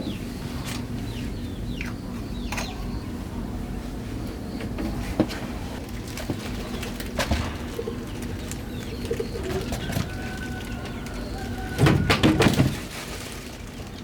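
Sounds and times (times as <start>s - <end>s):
loud clattering knocks: 6.0s - 14.0s
pigeon cooing: 7.2s - 12.6s.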